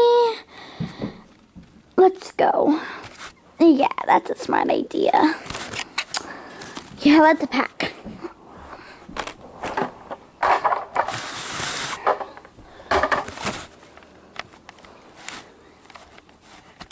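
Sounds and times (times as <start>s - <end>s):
plastic toys rustling and clicking: 9.2s - 16.9s.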